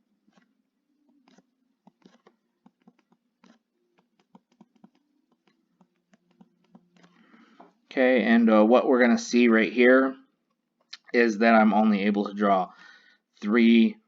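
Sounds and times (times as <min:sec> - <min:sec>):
pen taps and clicks writing: 0:00.3 - 0:07.7.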